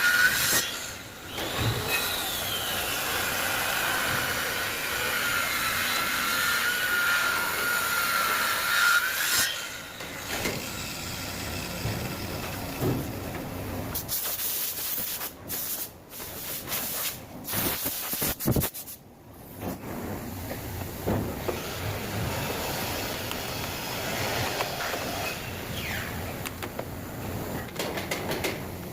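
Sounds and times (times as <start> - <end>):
power saw cutting wood: 0.0 - 12.9, 21.4 - 25.9.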